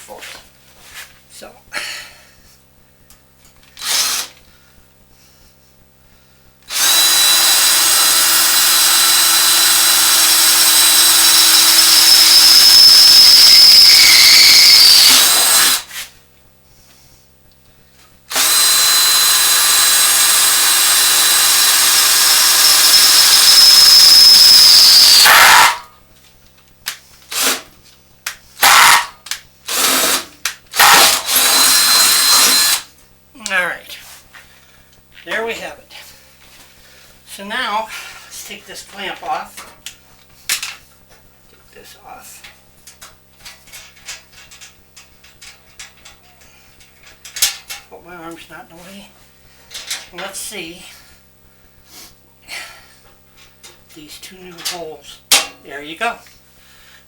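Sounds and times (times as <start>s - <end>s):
electric drill drilling: 3.8s - 4.4s, 6.7s - 15.9s, 18.3s - 25.9s, 27.3s - 27.7s, 28.6s - 32.9s.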